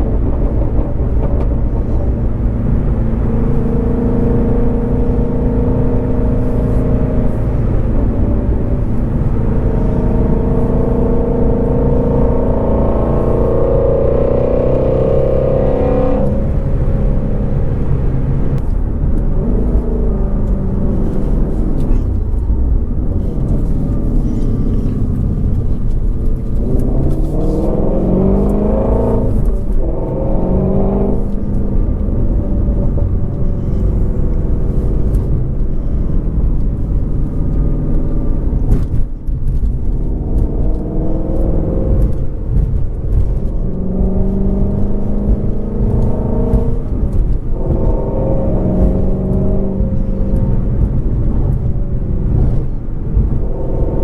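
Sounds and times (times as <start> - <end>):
car engine revving: 0.0 - 54.0
exhaust pops: 15.6 - 54.0.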